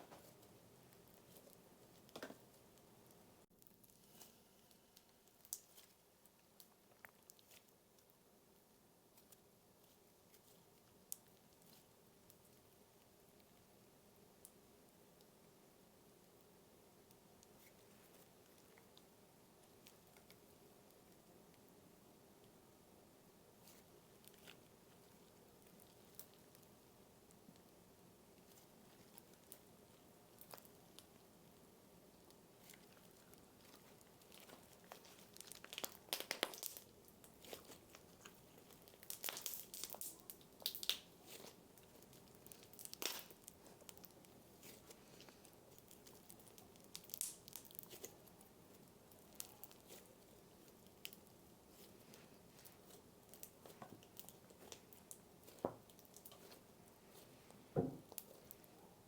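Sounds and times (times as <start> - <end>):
slime crackling and crunching: 23.6 - 27.7, 28.3 - 58.7.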